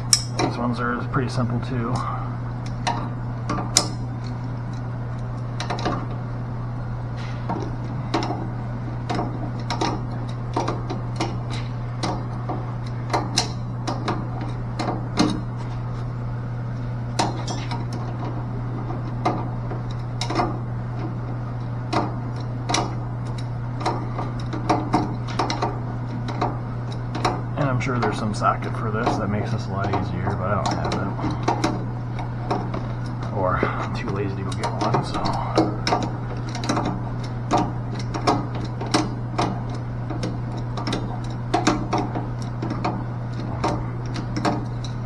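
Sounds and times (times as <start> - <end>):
steady low hum: 0.0 - 45.0
metal tools clinking on valve: 17.4 - 17.8.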